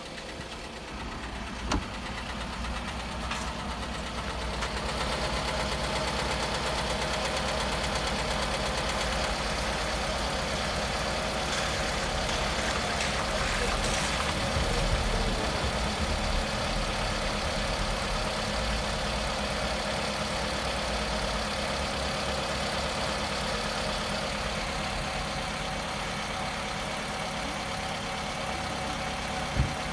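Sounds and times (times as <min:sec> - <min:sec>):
car engine idling with a knock: 0:00.0 - 0:20.0, 0:29.0 - 0:29.9.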